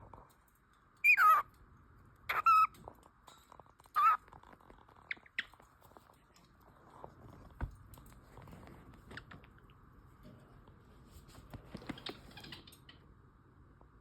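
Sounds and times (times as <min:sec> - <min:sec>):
cockatiel chirping: 0:01.0 - 0:01.4, 0:02.3 - 0:02.7, 0:04.0 - 0:04.2.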